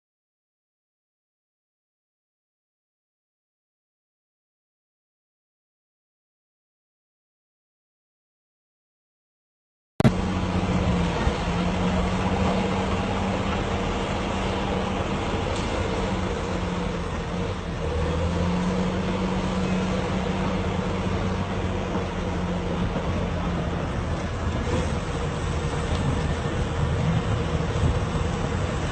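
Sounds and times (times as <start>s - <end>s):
heavy vehicle engine running: 10.0s - 28.9s.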